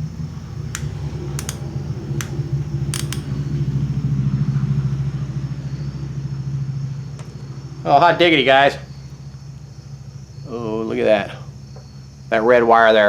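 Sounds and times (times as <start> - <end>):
soldering gun trigger clicks: 0.0 - 4.2.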